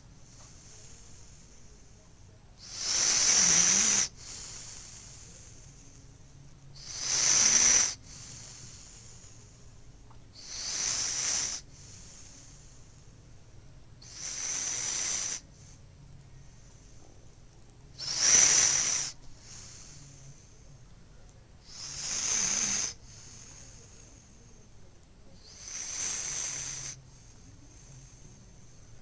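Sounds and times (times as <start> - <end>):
hissy snoring breaths: 0.0 - 13.4, 14.0 - 29.0.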